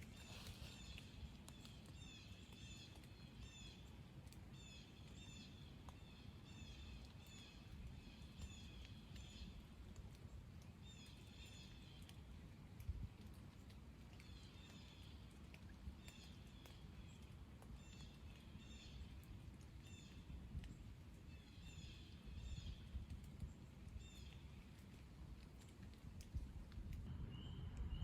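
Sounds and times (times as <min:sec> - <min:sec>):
low rumble of wind: 0:00.0 - 0:28.0.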